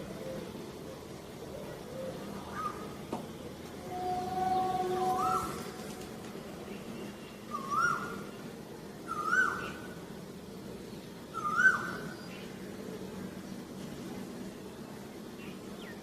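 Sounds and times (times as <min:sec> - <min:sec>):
bird whistled calls: 0:03.9 - 0:05.6, 0:07.5 - 0:08.2, 0:09.1 - 0:09.8, 0:11.4 - 0:12.1.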